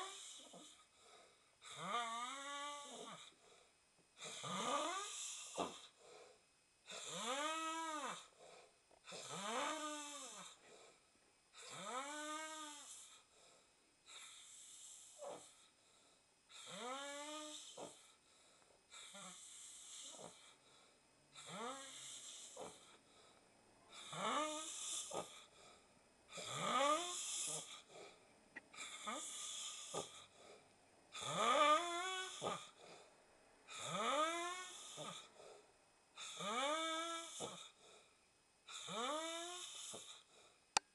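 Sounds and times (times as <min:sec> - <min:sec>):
man snoring: 0:01.7 - 0:03.3, 0:04.2 - 0:05.9, 0:06.9 - 0:08.3, 0:09.1 - 0:10.6, 0:11.6 - 0:13.2, 0:16.6 - 0:18.0, 0:19.0 - 0:20.6, 0:21.4 - 0:23.0, 0:23.9 - 0:25.5, 0:26.3 - 0:27.9, 0:28.8 - 0:30.3, 0:31.1 - 0:32.8, 0:33.7 - 0:35.3, 0:36.2 - 0:37.8, 0:38.7 - 0:40.3.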